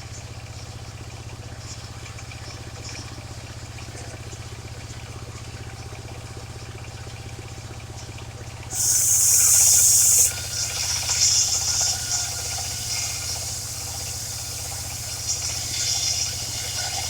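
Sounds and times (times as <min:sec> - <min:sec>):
engine low drone: 0:00.0 - 0:17.0
circular saw blade hissing: 0:08.7 - 0:17.0.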